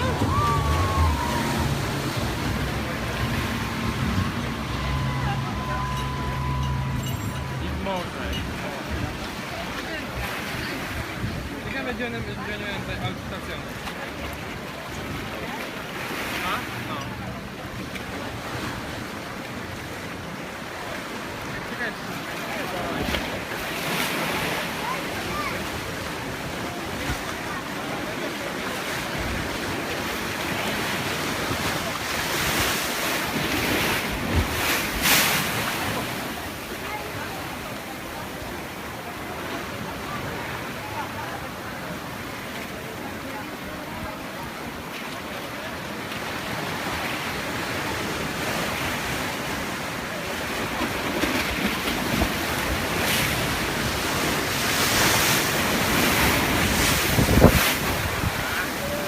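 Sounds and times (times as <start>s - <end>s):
sea surf washing in: 0.0s - 59.0s
wind on microphone: 53.3s - 59.0s
wind buffeting microphone: 55.8s - 58.5s.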